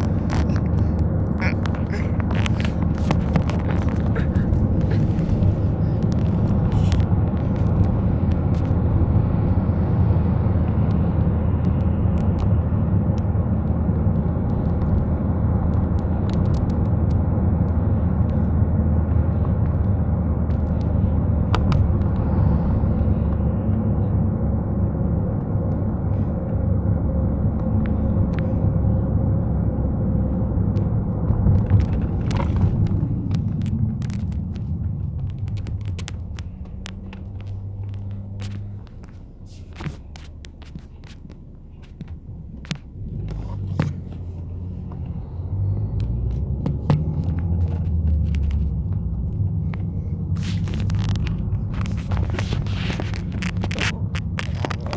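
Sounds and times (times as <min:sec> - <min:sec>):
vehicle engine and road noise: 0:00.0 - 0:54.9
light ticks: 0:10.6 - 0:24.2, 0:30.7 - 0:54.9.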